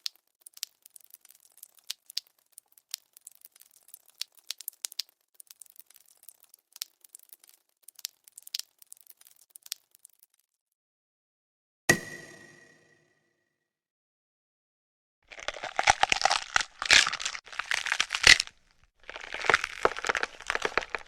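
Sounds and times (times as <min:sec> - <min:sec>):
wet clicks and drips: 0:00.0 - 0:10.6.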